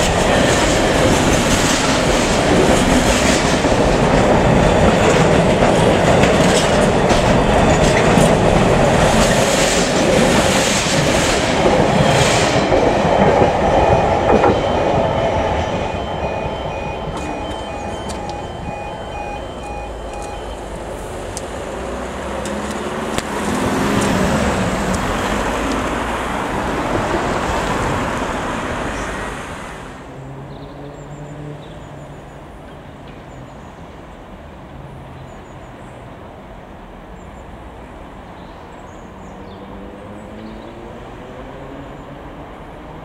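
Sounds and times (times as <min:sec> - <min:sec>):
train passing: 0:00.0 - 0:43.0
pulsing electronic tone: 0:13.8 - 0:21.1
low diesel hum: 0:16.2 - 0:22.8.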